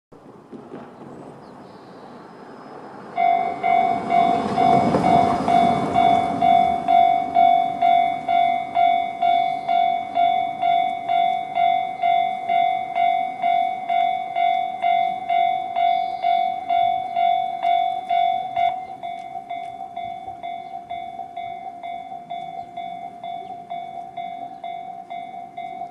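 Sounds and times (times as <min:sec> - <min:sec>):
passing vehicle rushing: 0:00.5 - 0:09.3
level crossing warning bell: 0:03.2 - 0:25.9.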